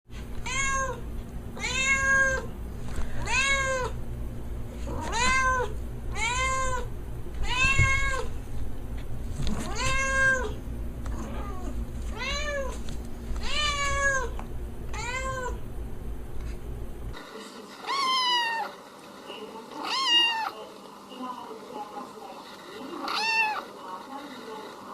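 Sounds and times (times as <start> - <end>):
cat meowing: 0.4 - 1.0, 1.6 - 2.5, 3.2 - 4.0, 4.9 - 8.3, 9.6 - 10.6, 11.2 - 12.8, 13.4 - 14.3, 14.9 - 15.6, 17.8 - 18.8, 19.8 - 20.6, 23.0 - 23.7.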